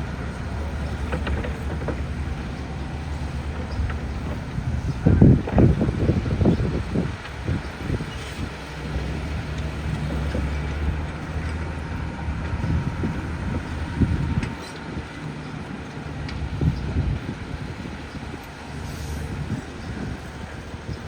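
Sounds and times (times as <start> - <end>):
low rumbles and knocks: 0.0 - 18.6
heavy machinery diesel engine running: 0.0 - 21.0.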